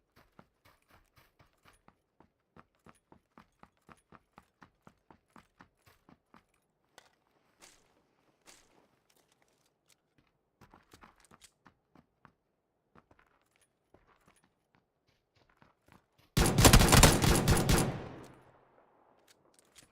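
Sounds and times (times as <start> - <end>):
rapid burst of gunfire: 16.4 - 18.4.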